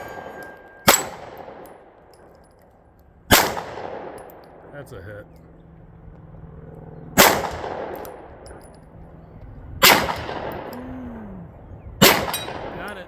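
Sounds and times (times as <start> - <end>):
pistol shots with echo: 0.0 - 2.4, 3.3 - 4.7, 7.2 - 8.7, 9.8 - 10.8, 12.0 - 13.0.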